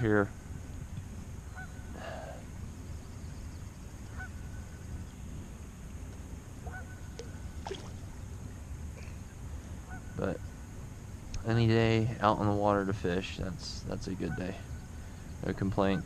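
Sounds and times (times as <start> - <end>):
geese honking faintly: 1.4 - 5.0, 6.6 - 7.8, 9.2 - 10.7, 11.4 - 16.0.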